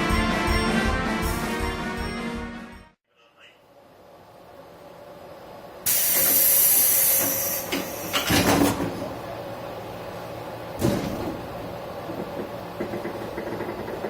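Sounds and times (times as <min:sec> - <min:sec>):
compressed air hiss: 0:05.9 - 0:08.2.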